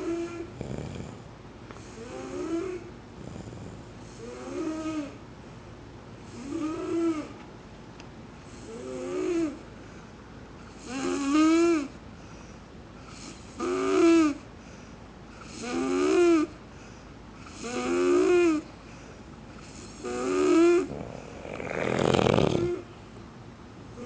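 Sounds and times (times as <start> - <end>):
person snoring: 0.0 - 1.3, 1.9 - 5.2, 6.3 - 7.3, 8.6 - 9.6, 15.5 - 16.5, 17.5 - 18.6, 19.7 - 22.9.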